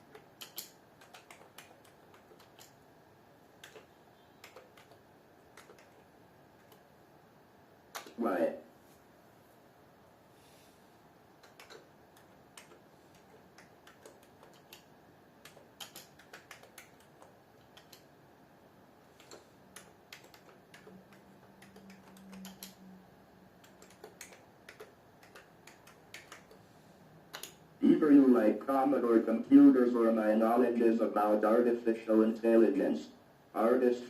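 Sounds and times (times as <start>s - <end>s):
computer keyboard typing clicks: 0.1s - 2.8s, 3.6s - 6.8s, 8.0s - 8.2s, 11.4s - 18.1s, 19.2s - 22.9s, 23.6s - 26.6s, 27.3s - 27.6s.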